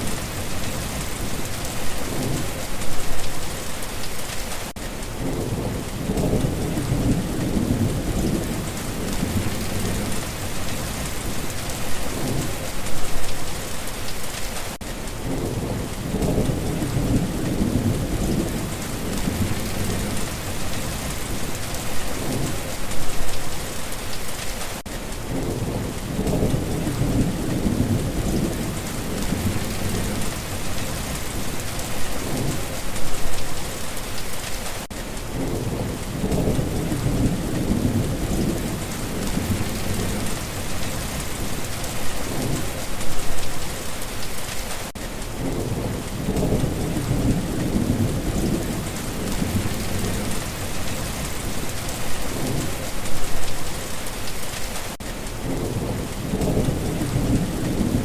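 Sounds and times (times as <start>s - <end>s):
rain pattering: 0.0s - 58.0s
distant thunder rumbling: 5.1s - 13.6s, 15.2s - 23.7s, 25.2s - 34.4s, 35.3s - 44.0s, 45.4s - 53.9s, 55.4s - 58.0s.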